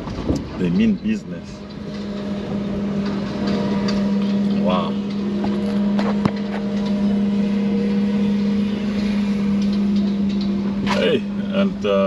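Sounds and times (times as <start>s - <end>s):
vehicle low hum: 0.0s - 12.0s.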